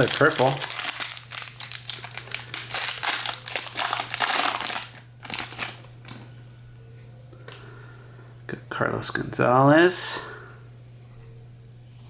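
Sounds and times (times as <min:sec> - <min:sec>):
foil wrapper crinkling: 0:00.0 - 0:06.2.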